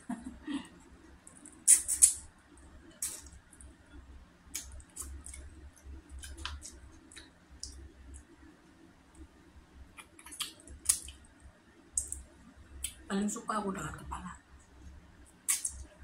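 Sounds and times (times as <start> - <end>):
wet mouth smacks while eating: 1.6 - 2.3, 3.0 - 3.3, 4.5 - 5.5, 10.0 - 11.2, 15.5 - 15.9.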